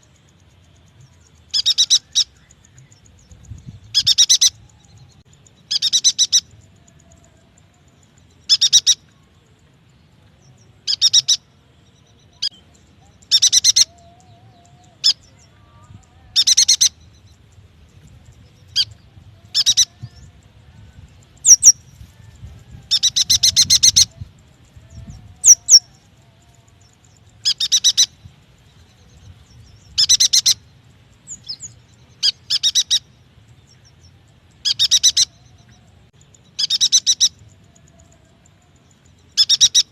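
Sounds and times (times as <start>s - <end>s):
bird buzzy chattering trills: 5.5s - 7.1s, 8.1s - 9.1s, 12.4s - 22.0s, 22.9s - 33.2s, 36.3s - 39.9s.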